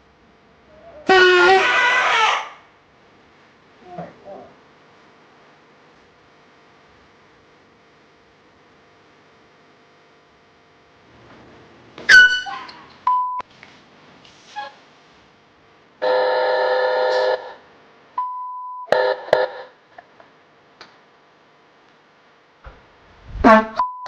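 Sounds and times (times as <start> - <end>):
horn honking: 1.1 - 2.1, 16.0 - 17.6, 18.9 - 19.7
sharp squeak falling in pitch: 12.1 - 12.8
short steady beep tones: 13.1 - 13.4, 18.2 - 18.9.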